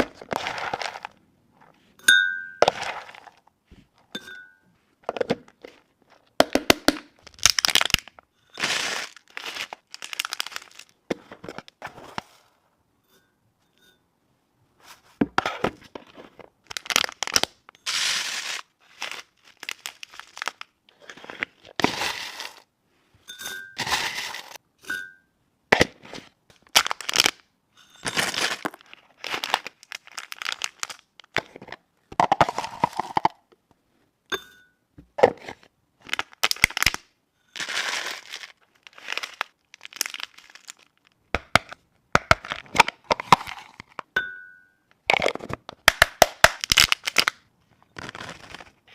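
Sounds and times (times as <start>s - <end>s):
plastic packaging crinkling and tearing: 7.1s - 11.0s, 16.6s - 22.6s, 26.6s - 27.4s, 28.2s - 31.4s, 36.0s - 41.2s, 45.9s - 47.4s, 48.0s - 48.9s.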